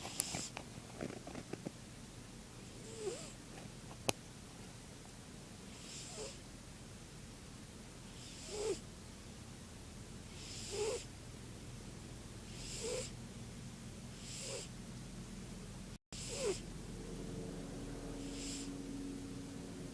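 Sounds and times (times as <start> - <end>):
steady hum: 0.0 - 19.9
cat snoring with whistle: 2.7 - 3.4, 5.7 - 6.4, 8.1 - 8.8, 10.3 - 11.1, 12.5 - 13.2, 14.2 - 14.7, 16.2 - 16.7, 17.8 - 19.0.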